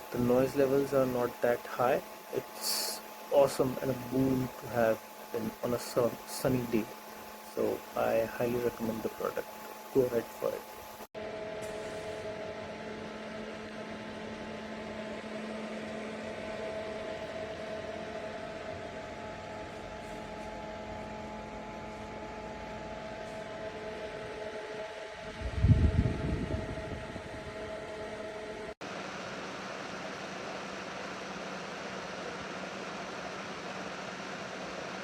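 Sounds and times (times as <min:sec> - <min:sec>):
air cooler fan whirring: 0:00.0 - 0:35.0
low rumble: 0:25.3 - 0:27.6.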